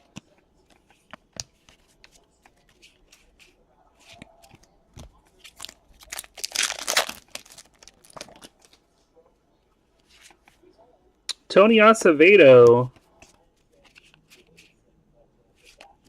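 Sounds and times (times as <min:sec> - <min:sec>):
crinkling rustle: 0:04.1 - 0:08.9.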